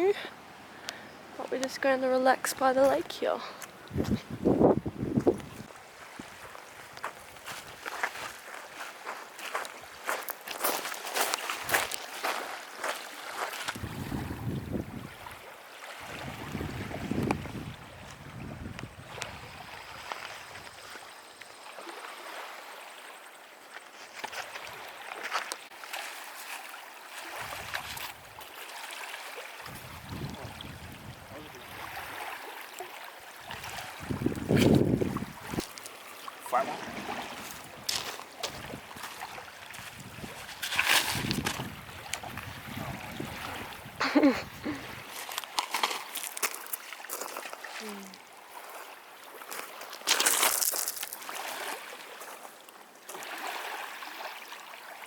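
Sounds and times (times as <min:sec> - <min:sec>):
small waves lapping: 0:00.0 - 0:55.0
wind rumbling on microphone: 0:03.8 - 0:06.6, 0:13.8 - 0:15.4, 0:16.0 - 0:20.8, 0:29.6 - 0:32.2, 0:33.4 - 0:35.7, 0:36.8 - 0:45.2
faint wash of water: 0:05.6 - 0:55.0
splash in lake water: 0:21.6 - 0:23.3, 0:24.2 - 0:44.0, 0:44.8 - 0:52.5, 0:53.1 - 0:55.0.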